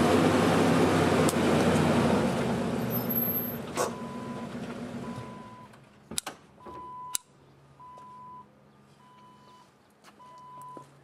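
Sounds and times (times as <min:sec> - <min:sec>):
car pulling away: 0:00.0 - 0:05.7
car warning chime beeping: 0:05.0 - 0:05.7, 0:06.6 - 0:10.9.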